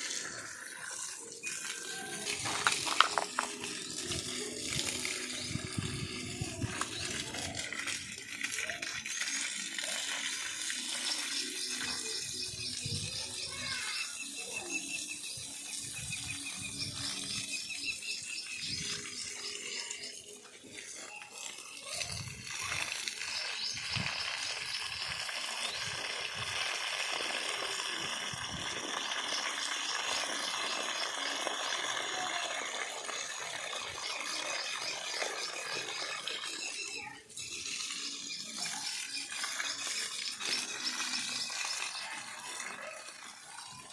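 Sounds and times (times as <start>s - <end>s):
water splashing onto plants: 0.0s - 43.9s
high chirping trills: 34.0s - 42.1s.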